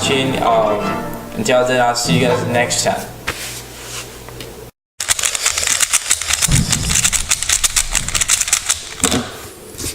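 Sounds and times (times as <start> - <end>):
rapid dense clicking: 5.0 - 9.0
low thud: 6.5 - 8.3.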